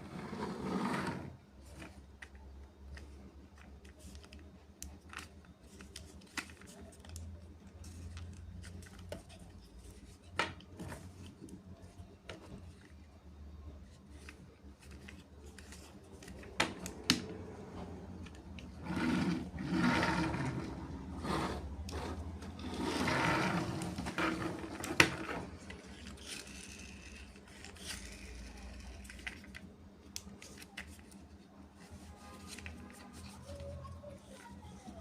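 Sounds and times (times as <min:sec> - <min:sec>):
whirring scraping toy: 0:00.0 - 0:01.9, 0:18.3 - 0:29.6.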